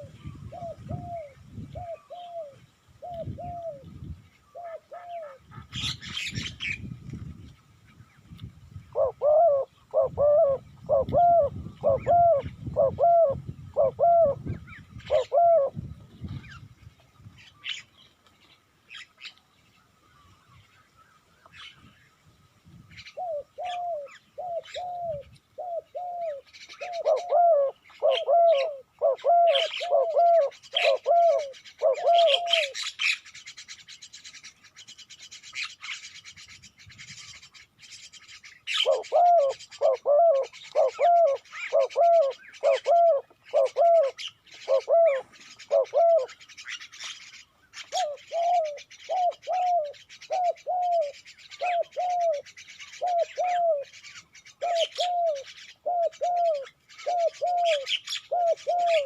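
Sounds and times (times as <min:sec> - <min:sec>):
dove cooing: 0:00.0 - 0:06.8, 0:08.9 - 0:16.4, 0:23.1 - 0:32.9, 0:38.7 - 0:59.0
small birds chirping: 0:00.0 - 0:59.0.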